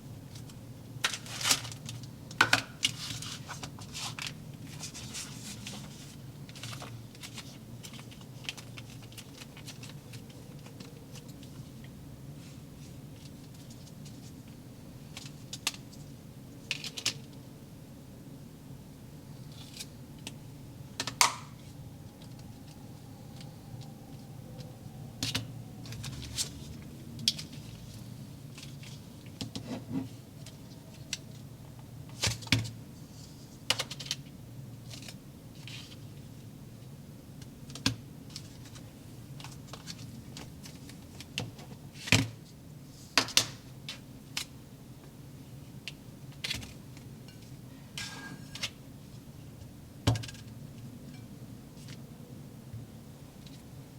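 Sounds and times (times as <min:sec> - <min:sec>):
faint low hum: 0:03.0 - 0:33.7.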